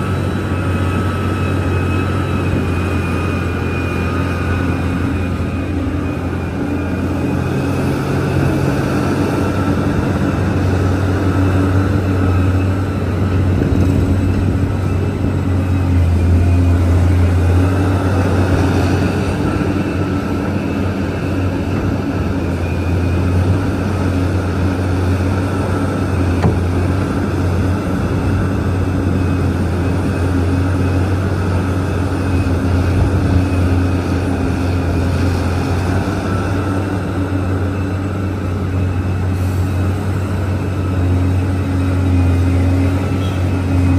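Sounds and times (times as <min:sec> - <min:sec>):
excavator deep drone: 0:00.0 - 0:43.9.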